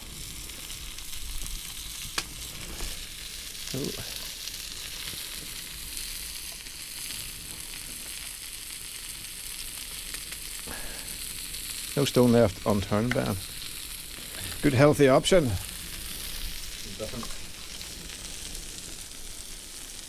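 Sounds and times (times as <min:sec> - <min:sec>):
food sizzling on a griddle: 0:00.0 - 0:20.0.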